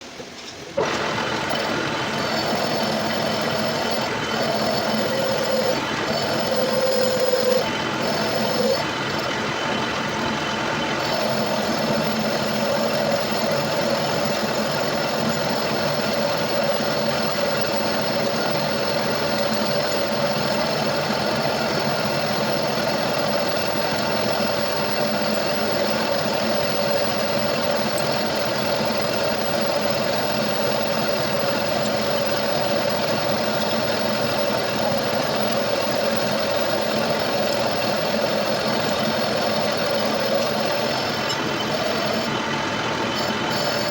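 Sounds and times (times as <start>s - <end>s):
metal lathe humming and whining: 0.8s - 43.9s.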